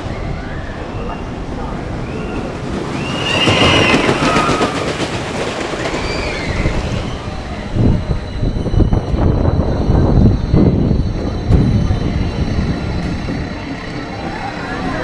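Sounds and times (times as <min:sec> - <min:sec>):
heavy uneven train rumble: 0:00.0 - 0:15.0
ride wheels squealing: 0:00.0 - 0:15.0
clicking over rails: 0:02.2 - 0:07.6.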